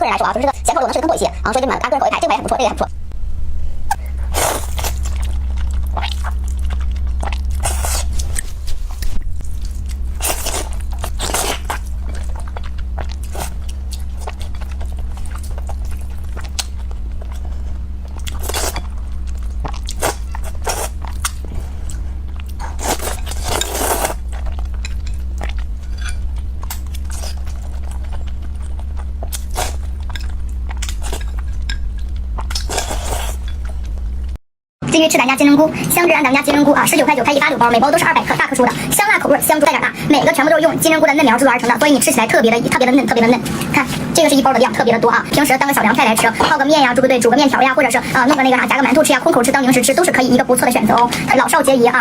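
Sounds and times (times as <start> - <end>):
steady low hum: 0.0 - 52.0
person chewing and crunching: 3.9 - 34.4.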